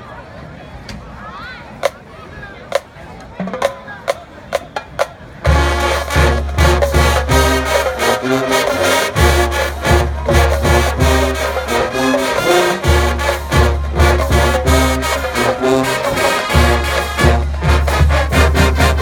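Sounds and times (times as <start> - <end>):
marching band playing: 3.4 - 19.0
drum hits: 5.0 - 19.0.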